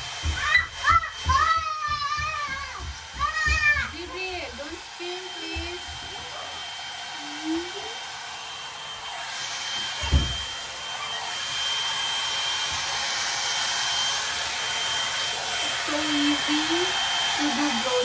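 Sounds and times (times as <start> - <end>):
hair dryer blowing air: 0.0 - 18.0
dull thump: 10.0 - 10.5.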